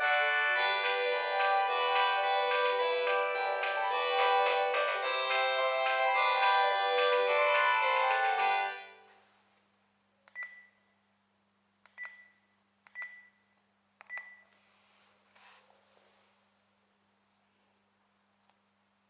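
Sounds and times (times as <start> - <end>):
cordless phone ringtone: 0.0 - 9.0.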